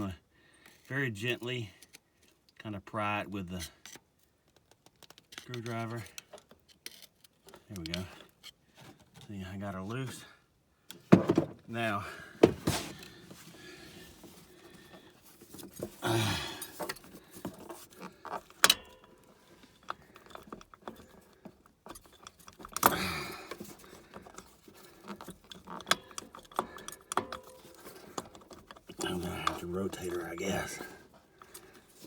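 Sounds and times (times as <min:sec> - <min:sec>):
metallic clinks and knocks of tools: 0:15.5 - 0:32.0
person grunting: 0:16.0 - 0:16.7, 0:22.9 - 0:23.5.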